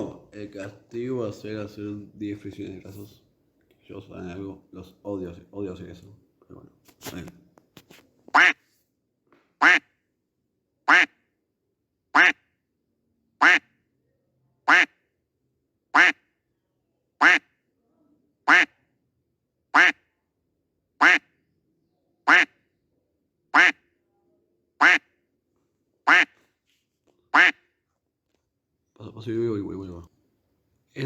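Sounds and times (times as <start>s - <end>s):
duck quack: 8.3s - 8.6s, 9.6s - 9.9s, 10.9s - 11.2s, 12.2s - 12.4s, 13.4s - 13.7s, 14.6s - 15.0s, 16.0s - 16.2s, 17.2s - 17.5s, 18.5s - 18.8s, 19.7s - 20.0s, 21.0s - 21.3s, 22.3s - 22.6s, 23.5s - 23.8s, 24.8s - 25.1s, 26.1s - 26.4s, 27.3s - 27.6s.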